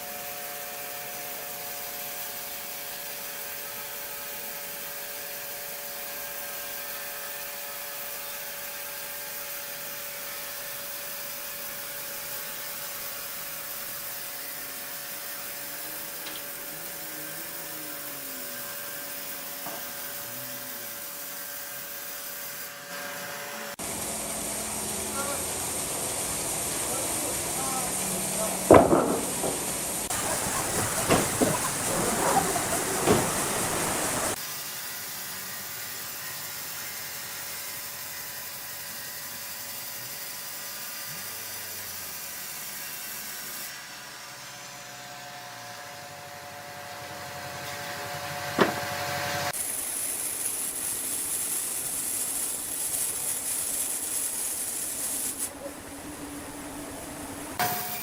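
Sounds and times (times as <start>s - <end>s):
sawmill machinery hiss and hum: 0.0s - 58.0s
knocks: 28.7s - 34.3s.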